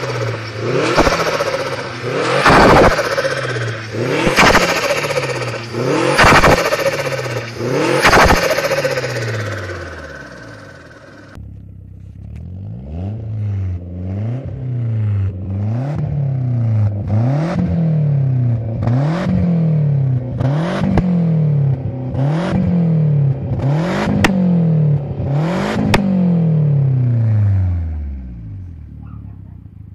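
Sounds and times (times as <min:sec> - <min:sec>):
sharp cracks: 0:00.0 - 0:11.4
car engine revving: 0:00.0 - 0:29.9.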